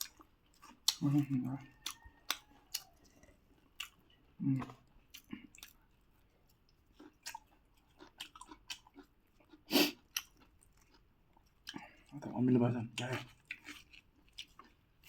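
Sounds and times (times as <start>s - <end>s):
person chewing food: 0.0s - 12.3s, 12.9s - 15.0s.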